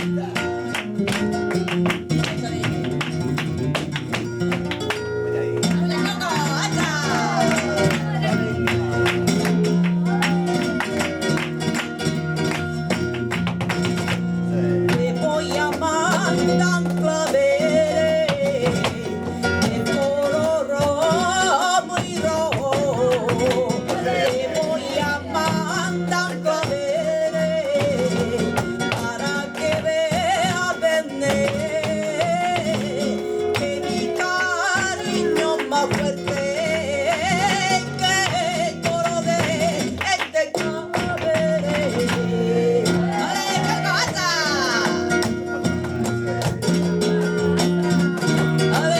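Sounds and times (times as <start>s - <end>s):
flamenco guitar: 0.0s - 48.9s
woman singing: 2.1s - 3.2s, 5.6s - 10.8s, 14.5s - 45.7s, 46.4s - 48.9s.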